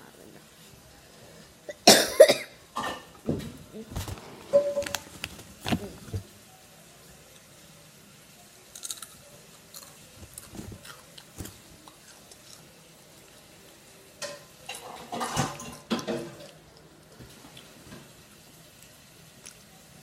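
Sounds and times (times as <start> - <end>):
chewing crunchy chips: 8.6 - 13.8.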